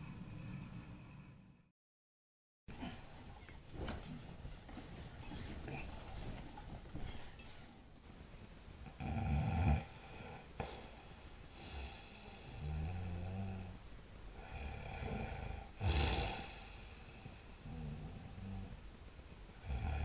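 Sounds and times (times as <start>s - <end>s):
soft low snores: 8.9s - 18.8s, 19.6s - 20.0s
loud snores: 9.0s - 10.5s, 11.6s - 13.8s, 14.4s - 18.8s, 19.6s - 20.0s.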